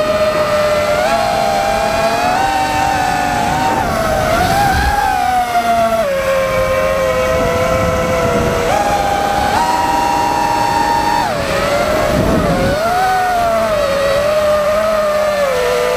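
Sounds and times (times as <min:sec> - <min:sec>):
drone motors whining: 0:00.0 - 0:15.9.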